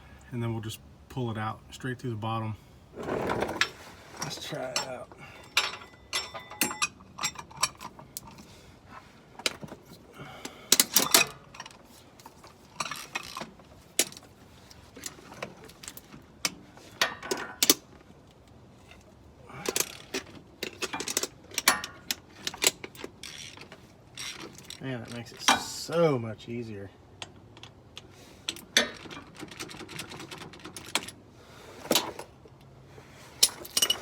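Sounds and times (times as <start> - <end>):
metal clinks and clatter: 3.6 - 8.4, 33.4 - 34.0.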